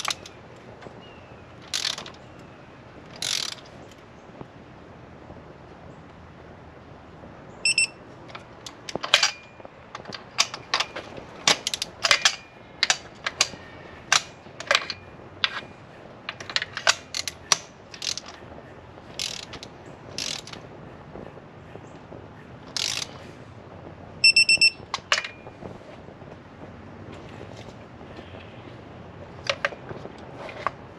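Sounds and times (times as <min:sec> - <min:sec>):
hand tools clinking: 0:00.0 - 0:00.4, 0:01.7 - 0:02.2, 0:07.7 - 0:18.4, 0:22.7 - 0:23.2, 0:24.2 - 0:25.6
short high electronic beep: 0:07.6 - 0:08.0, 0:24.2 - 0:24.8.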